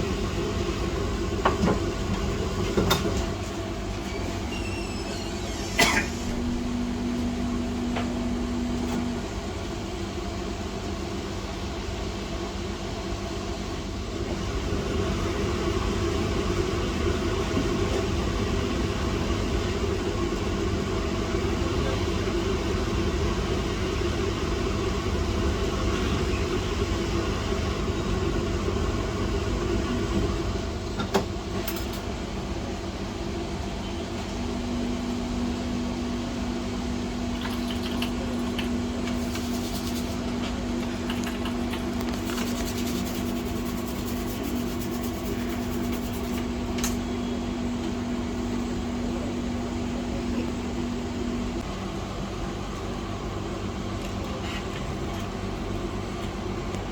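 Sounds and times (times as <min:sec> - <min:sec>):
electric fan whirring: 0:00.0 - 0:56.9
low hum tone: 0:04.1 - 0:10.1.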